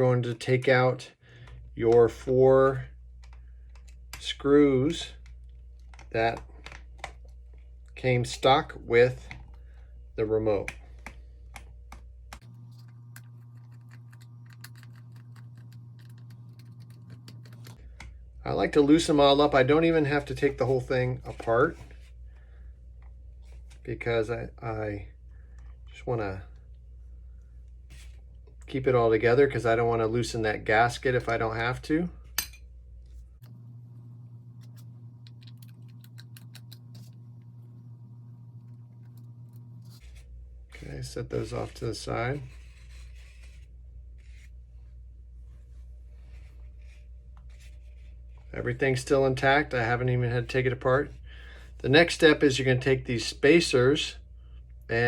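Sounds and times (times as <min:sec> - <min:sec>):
low steady hum: 0:00.0 - 0:55.0
screwdriver clicking on small screws: 0:12.8 - 0:17.7.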